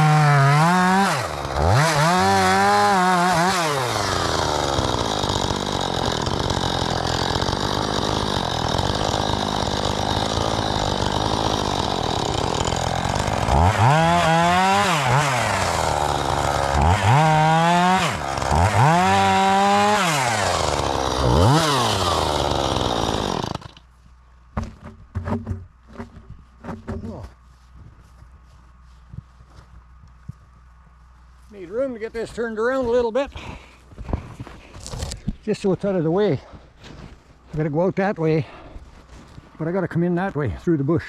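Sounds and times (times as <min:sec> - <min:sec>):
chainsaw revving: 0:00.0 - 0:23.8.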